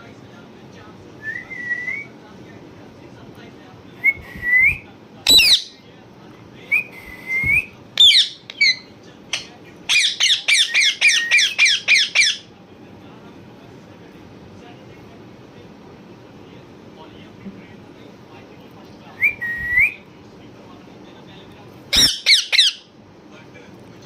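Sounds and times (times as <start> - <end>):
parrot whistling: 4.0 - 5.8, 6.7 - 8.9, 9.9 - 12.4, 19.2 - 20.0, 21.9 - 22.8
parrot squawking: 5.3 - 5.8, 8.0 - 12.5, 21.9 - 22.9.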